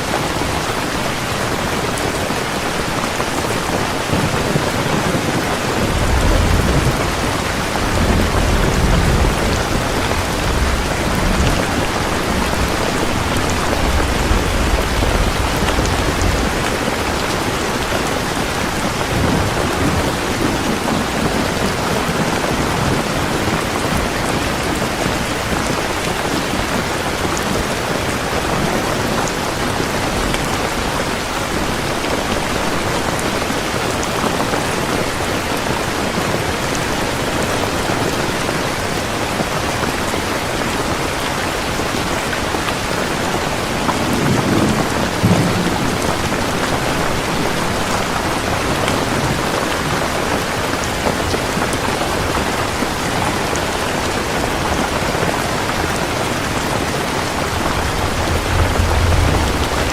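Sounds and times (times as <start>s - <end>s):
heavy rain falling: 0.0s - 59.9s
thunder rumbling: 3.7s - 32.4s, 42.8s - 50.3s, 54.1s - 59.9s.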